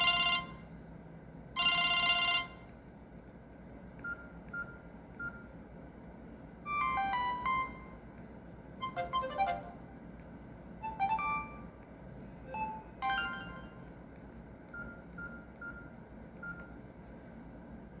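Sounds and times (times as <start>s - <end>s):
phone message alert beeps: 6.7s - 8.0s, 8.8s - 9.8s, 10.8s - 11.7s, 12.5s - 13.8s.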